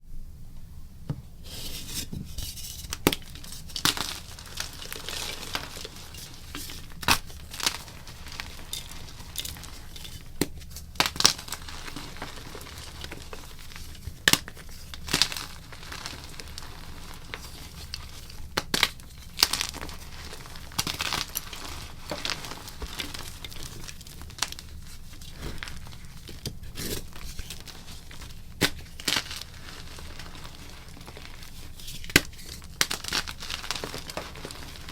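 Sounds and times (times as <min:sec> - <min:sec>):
chalk crumbling: 0:01.4 - 0:34.9
chalk pieces snapping: 0:30.1 - 0:34.8.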